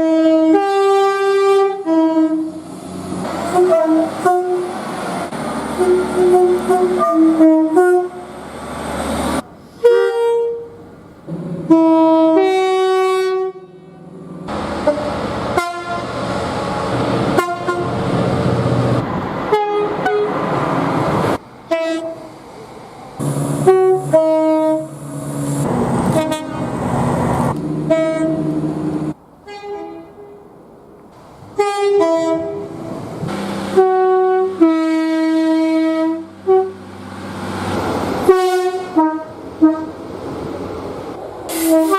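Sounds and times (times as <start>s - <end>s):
train horn blasts: 0.0s - 2.6s, 3.4s - 4.8s, 5.7s - 8.3s, 9.8s - 14.0s, 14.8s - 16.1s, 17.3s - 18.0s, 19.5s - 20.4s, 21.7s - 22.3s, 23.2s - 25.0s, 26.1s - 26.7s, 27.8s - 30.4s, 31.6s - 32.7s, 33.7s - 36.8s, 38.2s - 40.0s, 41.5s - 41.9s
passing trains running noise: 0.0s - 41.9s.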